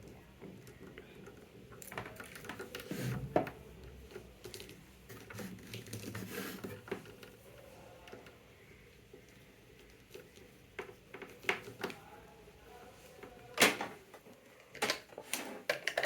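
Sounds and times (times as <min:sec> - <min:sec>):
plastic clicks and knocks: 0:09.9 - 0:12.0, 0:13.6 - 0:16.0.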